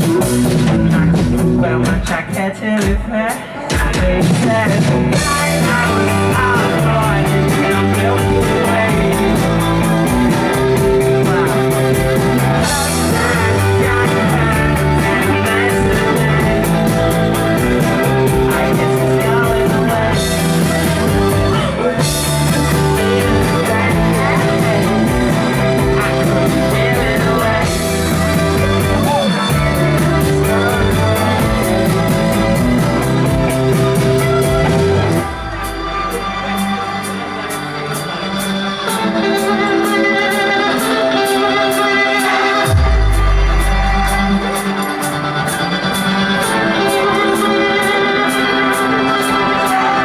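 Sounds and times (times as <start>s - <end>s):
drum beat: 0.0s - 36.3s, 42.6s - 45.1s
live rock band playing: 0.0s - 50.0s.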